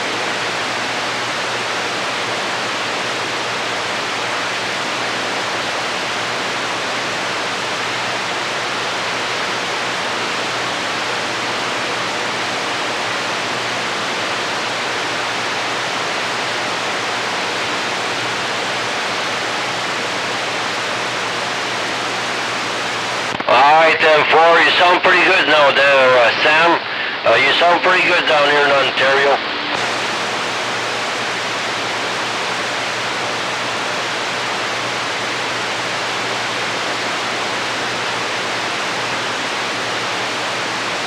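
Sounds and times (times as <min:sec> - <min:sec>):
radio static hiss: 0:22.0 - 0:31.2
faint low hum: 0:23.3 - 0:29.8.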